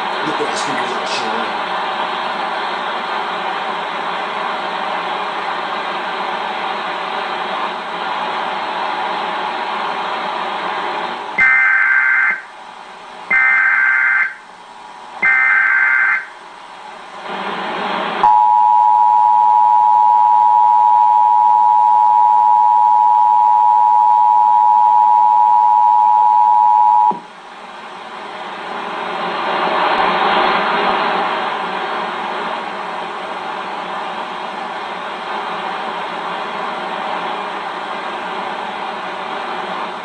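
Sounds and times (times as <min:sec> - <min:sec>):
data header screech: 0:11.4 - 0:12.4, 0:13.3 - 0:14.4, 0:15.2 - 0:16.3
two-tone attention signal: 0:18.2 - 0:27.2.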